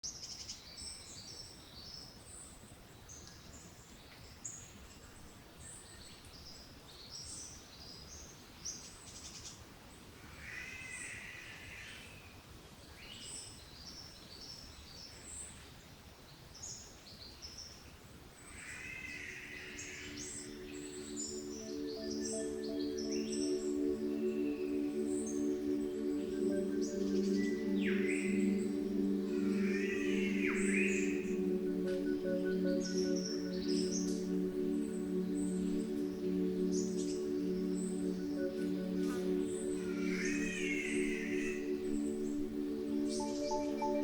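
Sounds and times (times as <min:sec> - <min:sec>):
longer lower bird call: 0:18.5 - 0:44.0.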